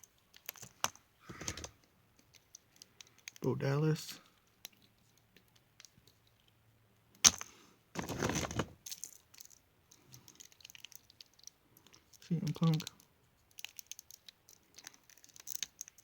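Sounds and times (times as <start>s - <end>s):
plastic figures clicking: 0.0s - 3.5s, 7.2s - 16.0s.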